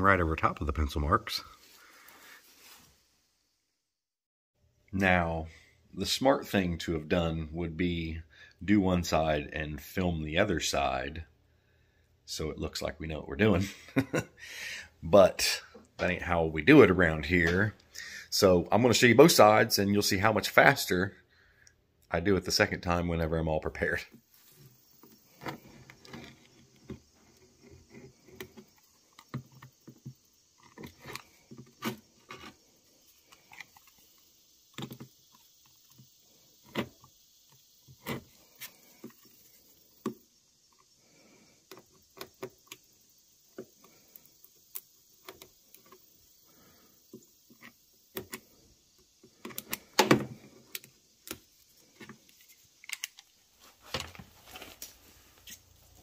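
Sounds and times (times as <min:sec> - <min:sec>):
hands handling tape: 0:49.4 - 0:55.6.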